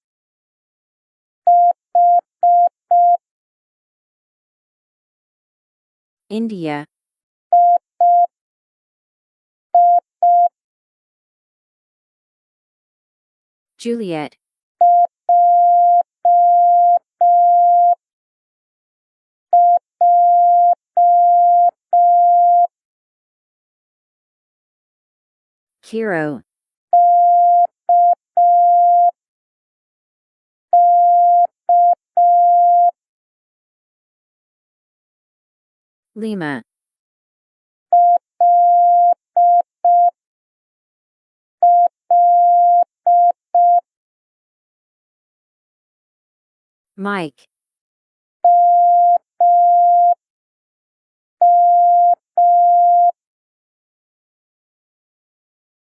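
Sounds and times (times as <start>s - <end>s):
morse code beep tone: 1.5s - 3.2s, 7.6s - 8.3s, 9.8s - 10.5s, 14.8s - 18.0s, 19.6s - 22.7s, 27.0s - 29.2s, 30.8s - 33.0s, 38.0s - 40.2s, 41.6s - 43.8s, 48.4s - 50.2s, 51.4s - 53.2s.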